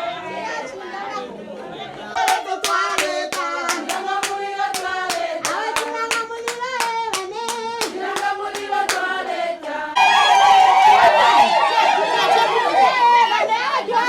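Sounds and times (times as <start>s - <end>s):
crowd chatter: 0.0s - 6.4s, 9.8s - 14.0s
women singing together: 0.0s - 10.2s, 12.2s - 14.0s
hand clapping: 2.2s - 9.1s.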